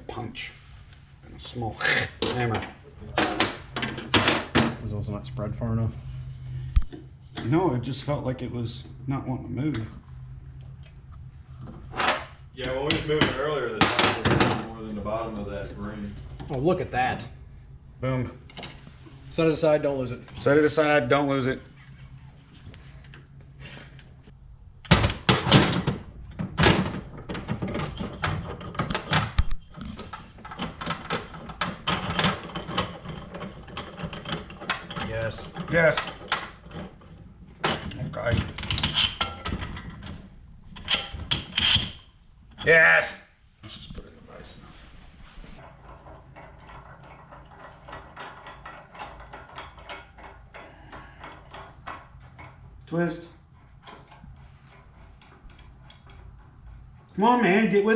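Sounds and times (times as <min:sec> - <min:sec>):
metal parts and tools clattering: 0:02.2 - 0:04.8, 0:25.2 - 0:42.8, 0:45.6 - 0:57.1
metallic clicks and scrapes: 0:27.2 - 0:42.1.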